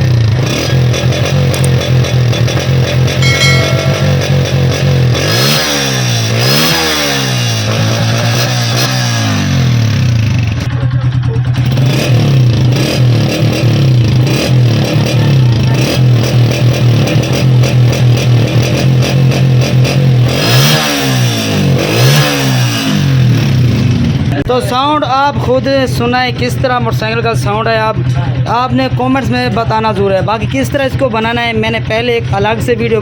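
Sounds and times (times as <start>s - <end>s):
motorcycle engine revving: 0.0s - 24.3s.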